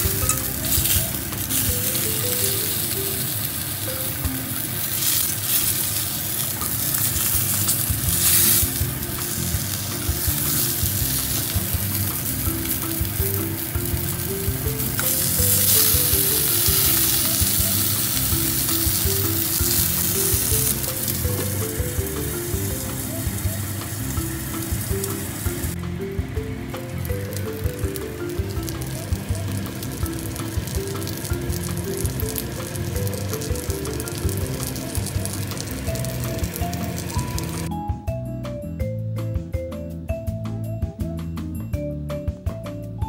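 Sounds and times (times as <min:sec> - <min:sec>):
fish sizzling: 0:00.0 - 0:37.7.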